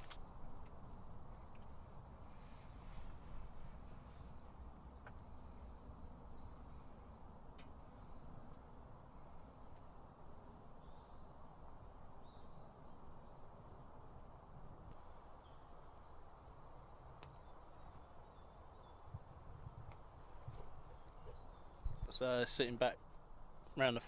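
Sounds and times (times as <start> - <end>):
small birds chirping: 4.5 - 14.0, 14.9 - 24.0.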